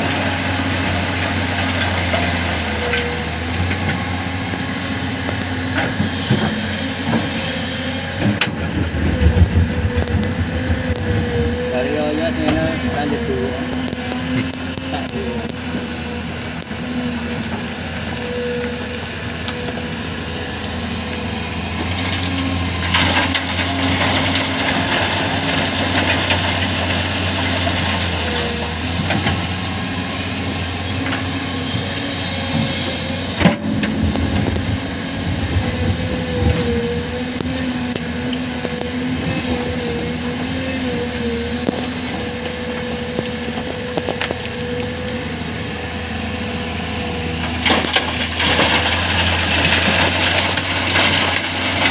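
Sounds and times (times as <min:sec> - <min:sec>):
excavator diesel engine: 0:00.0 - 0:51.9
rock scraping and clattering: 0:21.8 - 0:29.6, 0:32.4 - 0:37.6, 0:47.5 - 0:51.9.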